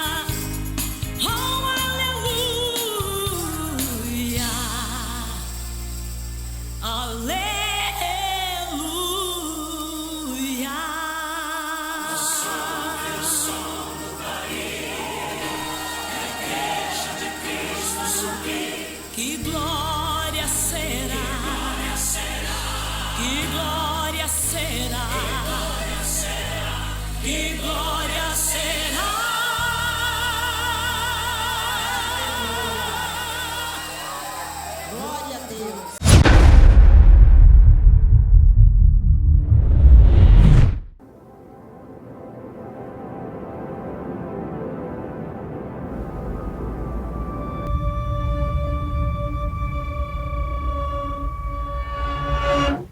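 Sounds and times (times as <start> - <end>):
band accompaniment with bass: 0.0 - 8.4
gospel singing: 6.9 - 36.3.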